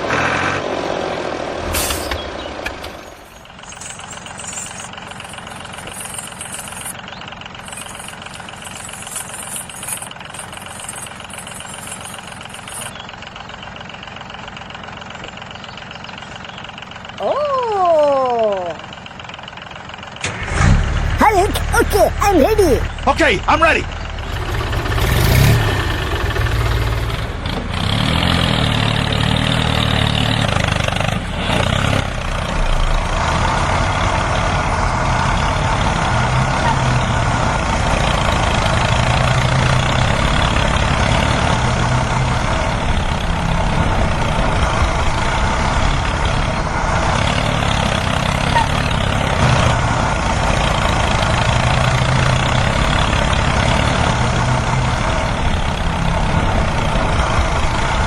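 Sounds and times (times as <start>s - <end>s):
engine idling: 1.7s - 27.7s.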